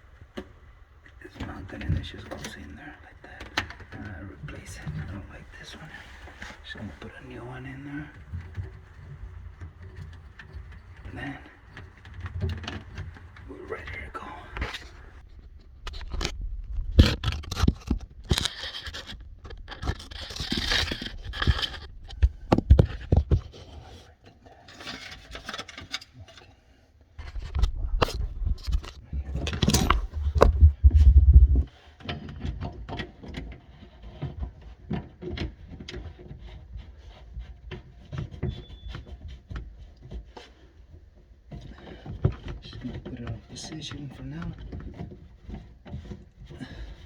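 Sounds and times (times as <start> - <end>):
pipe parts clicking and scraping: 0.0 - 47.0
heavier thumping: 27.7 - 31.7.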